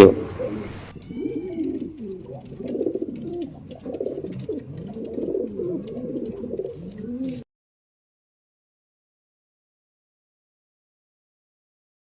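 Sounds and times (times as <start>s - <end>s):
pigeons cooing: 0.0s - 7.4s.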